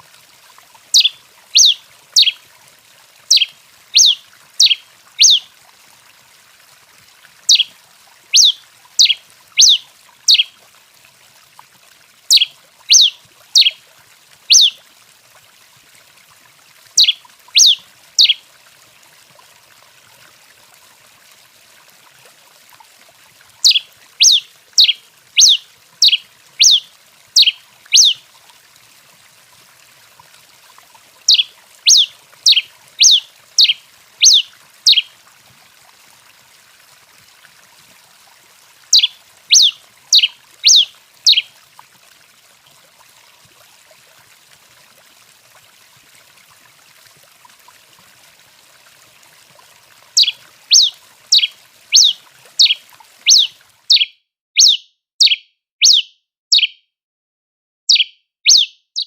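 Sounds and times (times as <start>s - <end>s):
finch singing: 0.9s - 2.4s, 3.3s - 5.4s, 7.5s - 7.7s, 8.4s - 10.5s, 12.3s - 13.8s, 14.5s - 14.8s, 17.0s - 18.4s, 23.6s - 26.8s, 27.4s - 28.2s, 31.3s - 35.1s, 38.9s - 41.5s, 50.2s - 56.8s, 57.9s - 59.0s.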